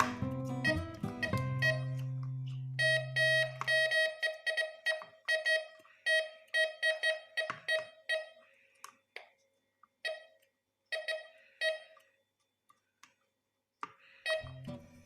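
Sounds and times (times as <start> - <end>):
metal detector short beeps: 2.7 - 8.4, 14.3 - 14.7.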